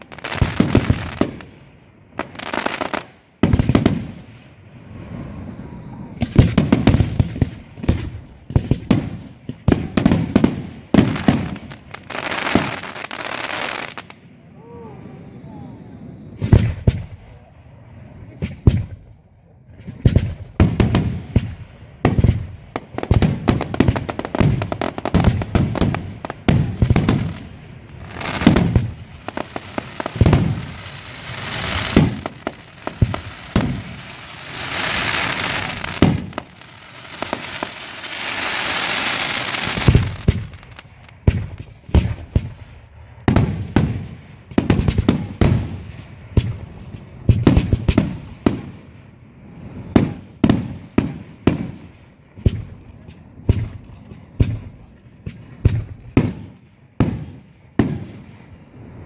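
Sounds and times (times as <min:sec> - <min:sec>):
firework bangs: 0:00.0 - 0:14.2, 0:16.2 - 0:17.3, 0:18.3 - 0:49.0, 0:49.6 - 0:58.8
firework hiss and crackle: 0:00.0 - 0:14.3, 0:19.7 - 0:59.0.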